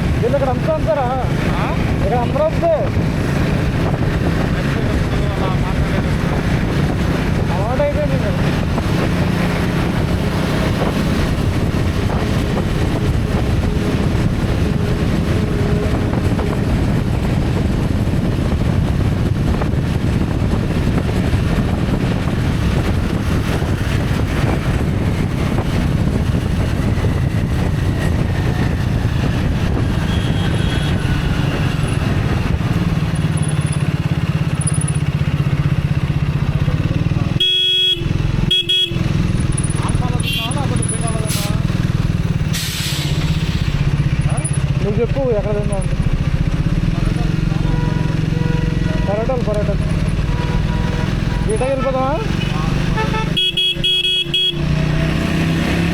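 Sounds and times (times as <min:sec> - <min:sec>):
motorcycle engine: 0:00.0 - 0:55.9
road and wind noise: 0:00.0 - 0:55.9
short horn toots: 0:52.9 - 0:54.7.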